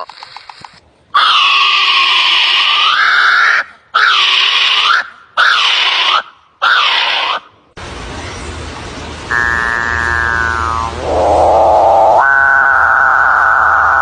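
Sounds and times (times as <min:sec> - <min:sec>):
bird screeching calls: 0:01.2 - 0:07.5, 0:09.3 - 0:14.0.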